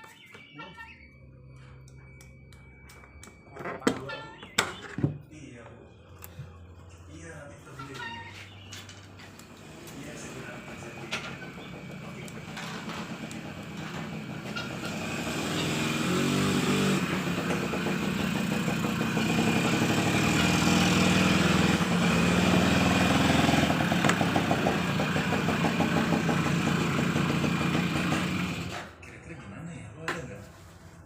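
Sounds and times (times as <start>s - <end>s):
engine running: 9.0s - 28.9s.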